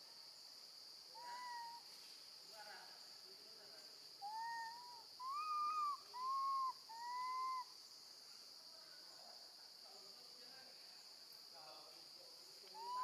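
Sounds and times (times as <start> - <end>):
high insect drone: 0.0 - 13.0
baby monkey calling: 4.2 - 7.6, 12.8 - 13.0.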